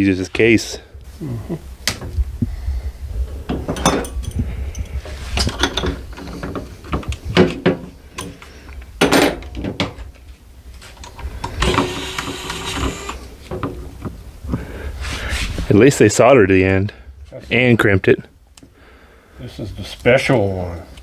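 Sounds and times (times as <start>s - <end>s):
parts rattling: 3.3s - 10.0s
hand tools clicking and knocking: 3.5s - 10.0s, 11.0s - 14.2s.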